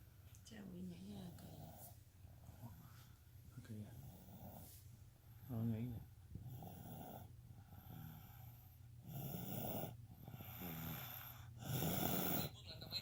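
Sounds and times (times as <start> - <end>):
person snoring: 9.0 - 12.6.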